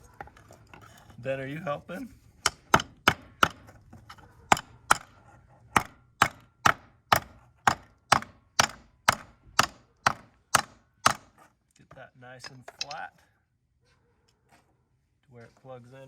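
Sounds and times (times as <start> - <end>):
hammer striking metal connector: 2.4 - 3.6, 5.8 - 11.3.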